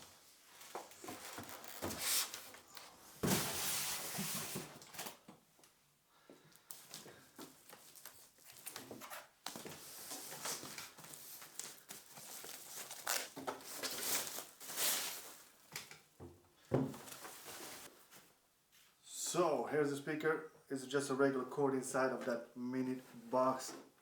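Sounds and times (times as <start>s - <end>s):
packaging crinkling and rustling: 0.5s - 2.9s, 6.7s - 15.9s
packaging tearing: 12.4s - 15.2s.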